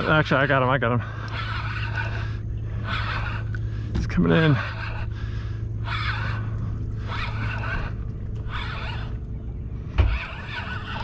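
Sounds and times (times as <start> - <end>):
low hum: 0.0 - 11.0
fishing reel cranking: 1.2 - 3.6, 5.8 - 9.2, 10.0 - 11.0.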